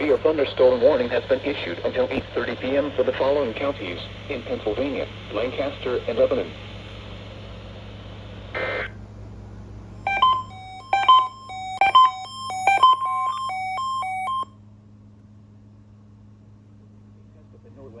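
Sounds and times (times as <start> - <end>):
radio hum: 0.0 - 7.1, 8.1 - 9.0
radio static burst: 8.5 - 9.0
short electronic beeps: 10.0 - 14.5.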